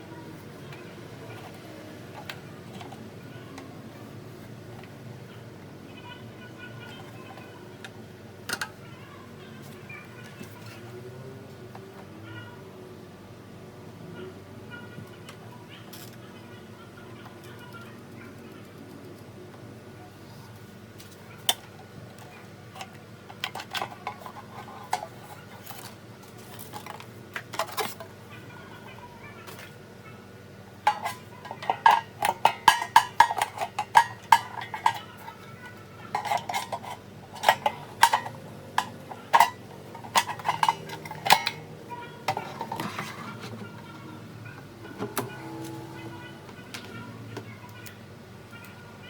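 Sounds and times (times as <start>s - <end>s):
plastic and metal parts clattering: 22.7s - 28.1s, 30.9s - 35.5s, 36.1s - 41.6s, 42.2s - 44.0s.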